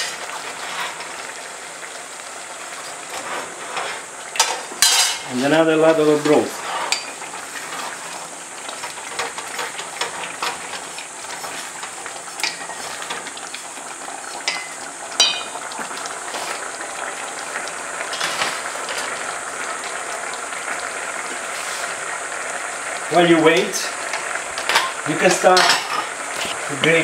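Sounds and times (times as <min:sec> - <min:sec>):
risotto sizzling and bubbling: 0:00.0 - 0:27.0
spoon stirring against pan: 0:06.4 - 0:13.4, 0:14.4 - 0:16.6.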